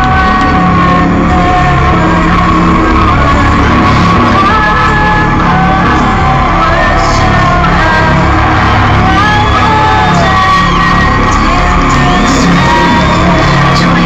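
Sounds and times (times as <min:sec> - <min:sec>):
crowd shouting and whooping: 0:00.0 - 0:14.0
hard techno music: 0:00.0 - 0:14.0.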